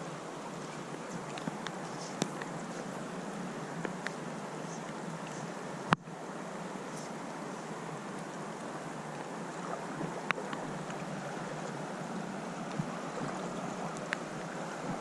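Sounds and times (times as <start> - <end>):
creek water rushing: 0.0 - 15.0
wind: 0.0 - 15.0.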